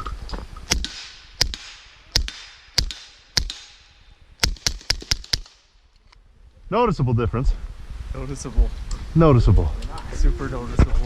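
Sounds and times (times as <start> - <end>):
suppressed pistol shots: 0.7 - 5.8.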